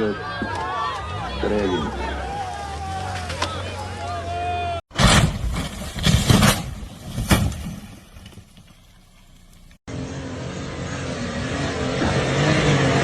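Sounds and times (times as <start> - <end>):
off-road vehicle engine under load: 0.0 - 4.9, 6.6 - 13.0
vehicle knocks and bangs: 4.9 - 8.8.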